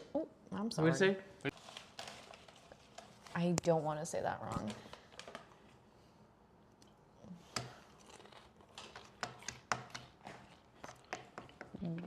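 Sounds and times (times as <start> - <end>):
crunchy clicks and crinkles: 7.9 - 12.0.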